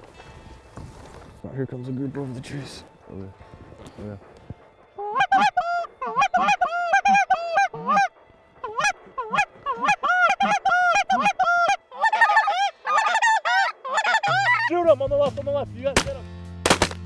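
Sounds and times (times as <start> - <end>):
geese yelping honks: 5.0 - 14.7.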